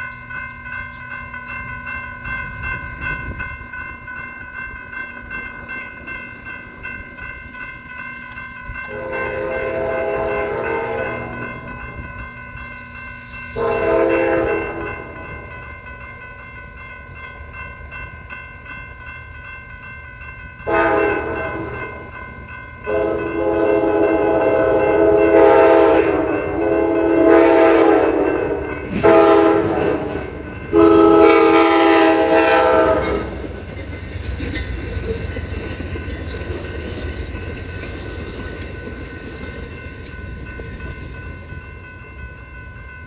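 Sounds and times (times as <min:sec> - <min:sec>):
train rumble and wheel clatter: 0:00.0 - 0:43.0
locomotive air horn blasts: 0:08.9 - 0:11.5, 0:13.6 - 0:15.2, 0:20.7 - 0:21.7, 0:22.9 - 0:28.3, 0:28.9 - 0:33.4.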